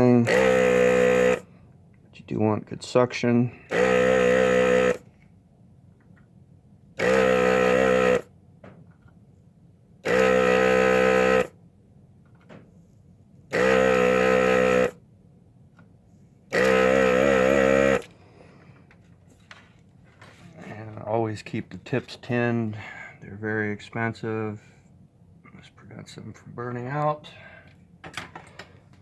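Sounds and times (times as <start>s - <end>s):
desoldering vacuum pump humming: 0.0s - 19.5s.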